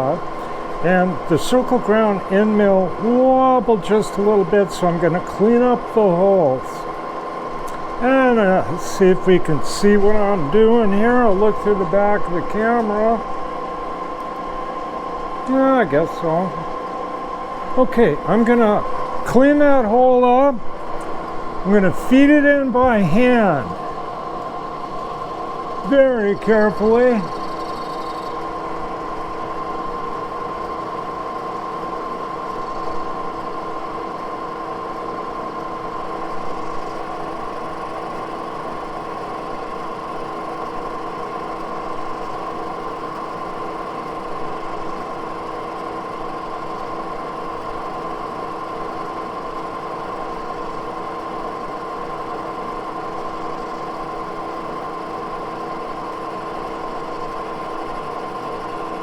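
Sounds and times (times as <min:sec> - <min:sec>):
machine spindle humming: 0:00.0 - 0:59.0.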